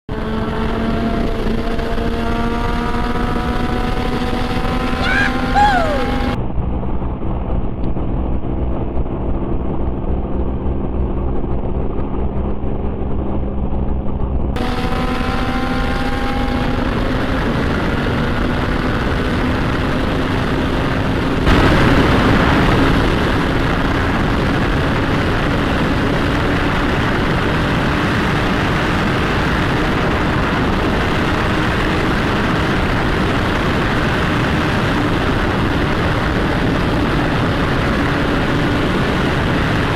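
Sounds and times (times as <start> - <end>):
motorcycle exhaust running: 14.6 - 39.9
wind noise on microphone: 14.6 - 39.9.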